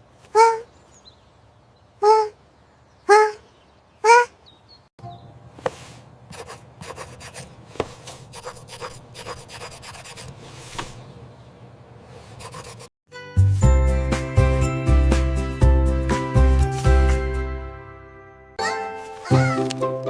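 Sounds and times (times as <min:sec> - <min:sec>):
rubbing and scratching strokes: 0:05.6 - 0:11.1, 0:12.0 - 0:12.9
music: 0:13.1 - 0:20.0.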